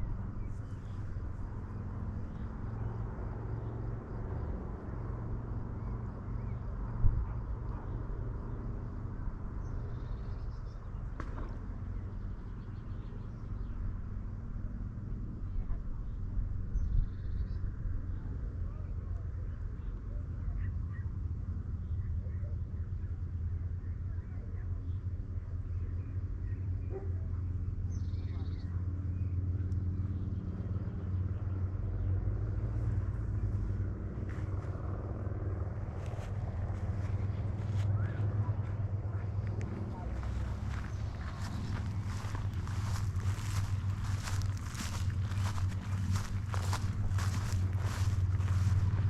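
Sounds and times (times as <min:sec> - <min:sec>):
engine humming steadily: 0:00.0 - 0:49.0
low rumble: 0:30.0 - 0:49.0.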